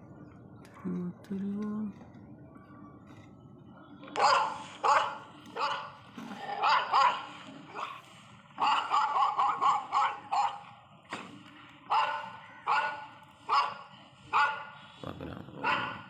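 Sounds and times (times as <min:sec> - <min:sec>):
dog barking: 0:04.2 - 0:08.0, 0:08.6 - 0:10.7, 0:11.9 - 0:14.8, 0:15.6 - 0:16.0.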